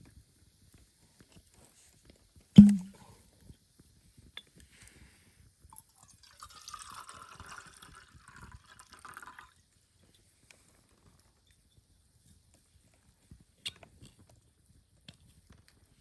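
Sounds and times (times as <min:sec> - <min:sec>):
drink pouring into a cup: 0:05.8 - 0:09.6.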